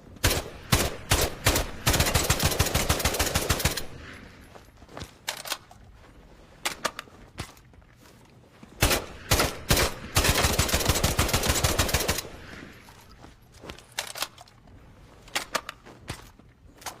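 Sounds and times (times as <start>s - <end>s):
rifle gunshots: 0.2s - 4.0s, 8.8s - 12.5s
quiet gun clicks: 5.1s - 5.9s, 12.1s - 17.0s
automatic gunfire burst: 8.8s - 12.2s.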